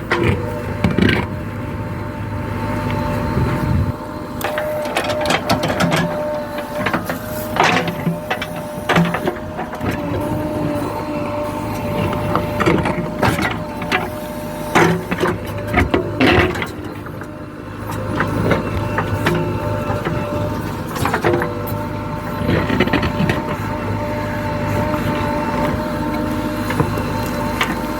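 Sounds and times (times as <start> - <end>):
diesel engine running: 0.0 - 27.9
steady whine: 0.0 - 27.9.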